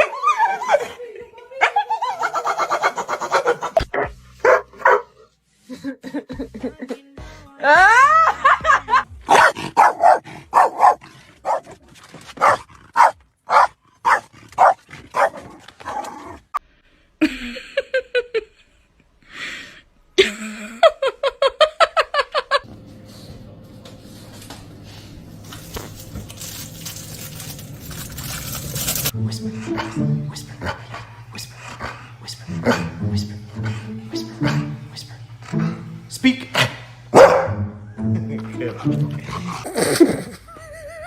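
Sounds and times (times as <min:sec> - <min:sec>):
dog barking: 0:01.6 - 0:05.2, 0:09.3 - 0:11.8, 0:12.4 - 0:15.5, 0:37.1 - 0:37.7.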